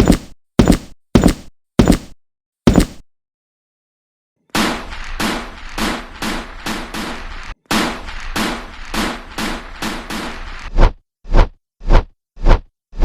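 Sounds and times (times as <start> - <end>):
rapid toy gunfire: 2.7 - 3.0, 4.6 - 10.7.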